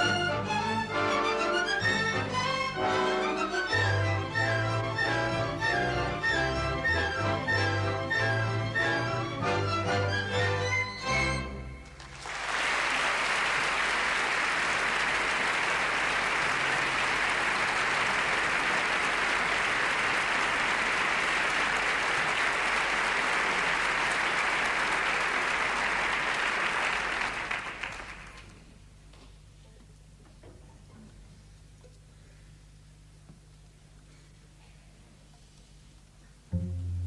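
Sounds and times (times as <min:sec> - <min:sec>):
large audience applauding: 0:12.0 - 0:28.6.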